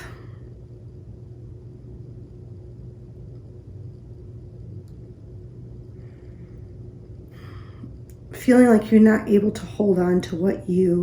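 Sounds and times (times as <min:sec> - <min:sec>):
low room hum and rumble: 0:00.0 - 0:11.0.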